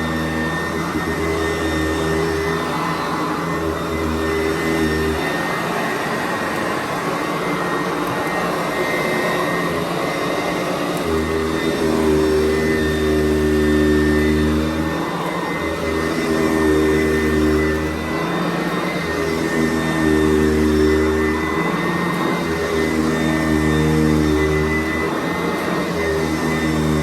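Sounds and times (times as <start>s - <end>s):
vacuum cleaner motor whining: 0.0s - 27.0s.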